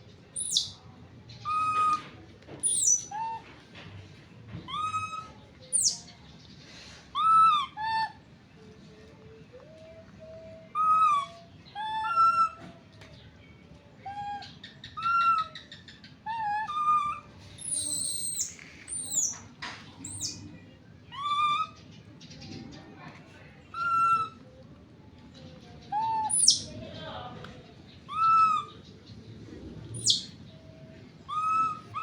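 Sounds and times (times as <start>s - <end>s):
baby monkey cooing: 0.4s - 0.7s, 1.4s - 2.0s, 2.6s - 3.4s, 4.7s - 6.0s, 10.8s - 12.6s, 14.0s - 19.4s, 20.0s - 20.4s, 21.1s - 21.8s, 23.7s - 24.4s, 25.9s - 26.7s, 28.1s - 28.8s, 29.9s - 30.4s, 31.3s - 32.0s
monkey high squeals: 0.4s - 0.7s, 1.5s - 2.0s, 2.6s - 3.4s, 4.7s - 6.0s, 7.2s - 8.1s, 10.8s - 12.6s, 15.0s - 15.5s, 16.3s - 19.3s, 20.0s - 20.4s, 21.1s - 21.8s, 23.7s - 24.4s, 26.0s - 26.7s, 28.1s - 28.8s, 30.0s - 30.3s, 31.3s - 32.0s.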